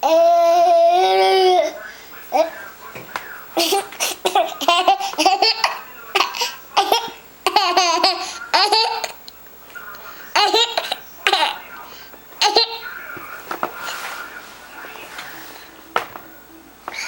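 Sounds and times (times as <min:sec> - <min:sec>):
baby laughing: 0:03.6 - 0:09.2, 0:10.3 - 0:11.6, 0:12.4 - 0:12.9.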